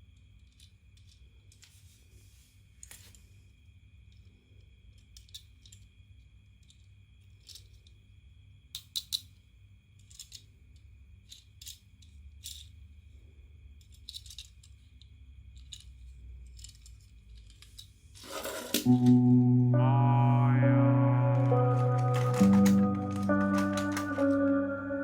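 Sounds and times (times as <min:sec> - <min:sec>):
clicks and rattles of toy packaging: 0:05.0 - 0:05.9, 0:06.6 - 0:07.9, 0:10.0 - 0:10.5, 0:11.2 - 0:12.7, 0:13.8 - 0:19.0, 0:21.8 - 0:24.4.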